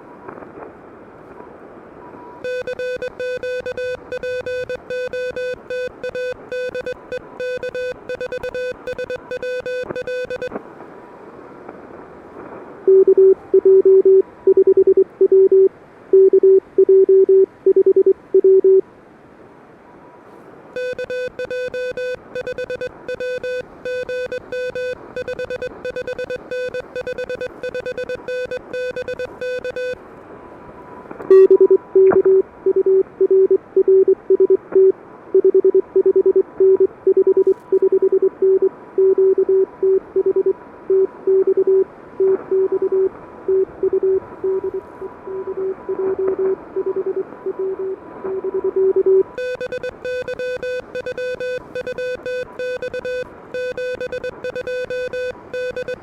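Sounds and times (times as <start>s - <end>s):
receiver hiss: 2.2s - 11.0s, 20.7s - 30.0s, 49.3s - 56.0s
higher buzzy morse tone: 2.4s - 10.6s, 20.8s - 30.0s, 49.3s - 56.0s
low morse code tone: 2.4s - 10.6s, 12.9s - 18.8s, 20.8s - 30.0s, 31.3s - 56.0s.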